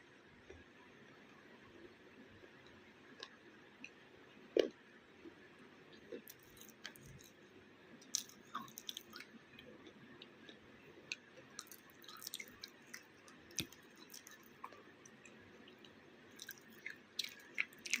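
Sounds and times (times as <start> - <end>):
chewing crunchy clay: 6.1 - 7.4, 8.0 - 18.0.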